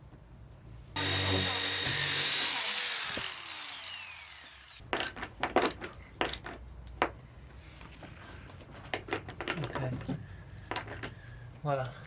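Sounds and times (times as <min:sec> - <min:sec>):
power tool motor winding down: 0:01.0 - 0:04.8.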